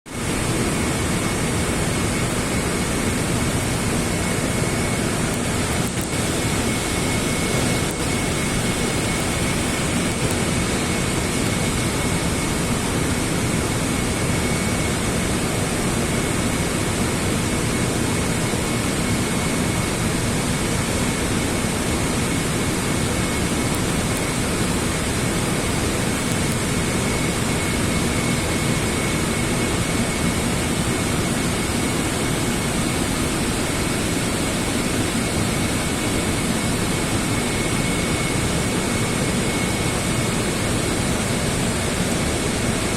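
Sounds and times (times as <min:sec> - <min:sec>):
welding arc hissing: 0:03.0 - 0:12.2, 0:22.1 - 0:40.1.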